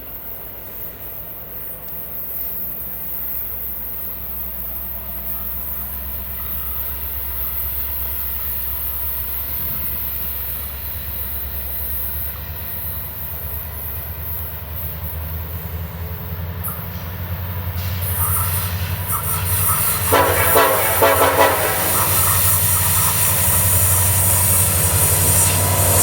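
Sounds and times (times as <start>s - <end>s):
diesel locomotives rumbling: 0.0s - 26.0s
wheels squealing on rail: 0.0s - 26.0s.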